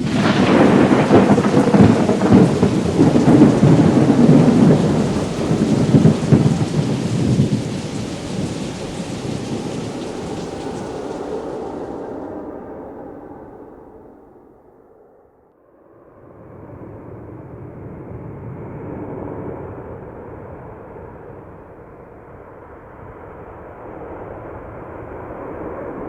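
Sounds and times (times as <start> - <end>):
steady rain: 0.0 - 13.6
thunder rumbling: 0.0 - 14.6, 22.4 - 26.0.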